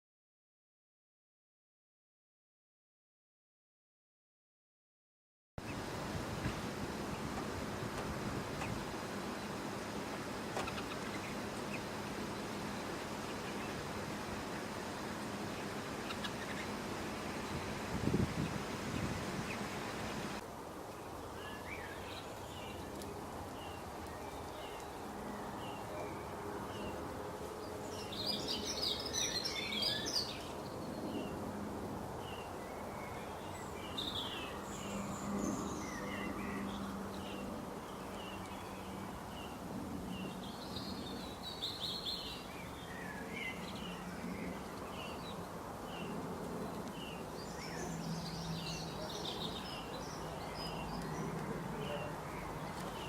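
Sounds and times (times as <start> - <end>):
busy birdsong: 5.6 - 53.0
outdoor background noise: 5.6 - 53.0
bird chirping: 27.6 - 31.4, 32.3 - 46.2, 46.8 - 53.0.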